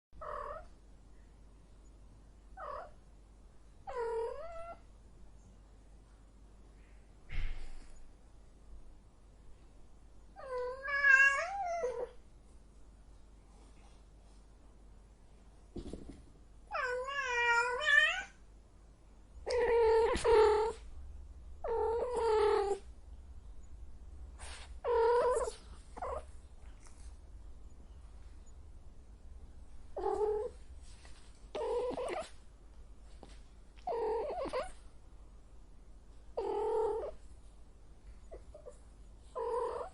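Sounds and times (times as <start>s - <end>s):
cat yowling: 10.4s - 12.1s
cat meowing: 10.4s - 12.2s, 16.7s - 18.4s.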